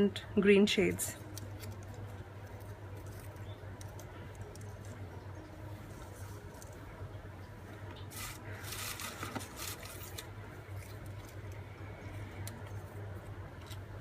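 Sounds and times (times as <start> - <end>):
low hum: 0.0 - 14.0
paper rustling: 8.1 - 10.3.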